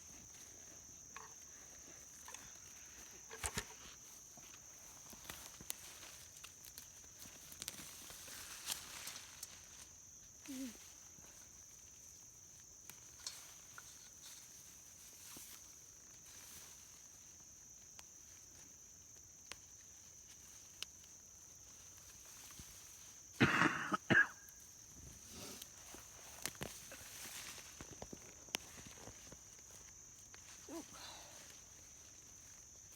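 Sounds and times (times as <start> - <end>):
person coughing: 23.4 - 24.4
soft digging in soil: 24.4 - 32.9.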